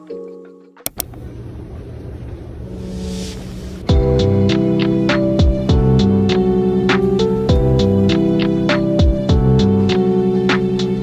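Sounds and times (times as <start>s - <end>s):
background music with plucked notes: 0.0s - 1.0s, 3.9s - 11.0s
soft music tones: 0.0s - 11.0s
low steady rumble: 1.0s - 11.0s
brief hiss: 2.8s - 3.9s.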